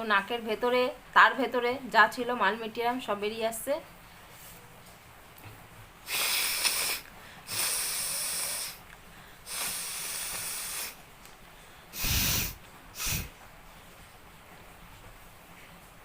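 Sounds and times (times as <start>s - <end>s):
woman blowing her nose: 6.0s - 8.8s, 9.4s - 11.0s, 12.0s - 13.4s.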